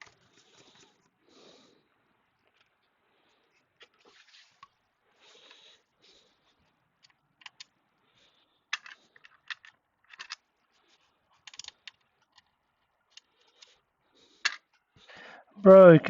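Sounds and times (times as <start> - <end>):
light plastic clicks and scrapes: 8.7 - 13.8.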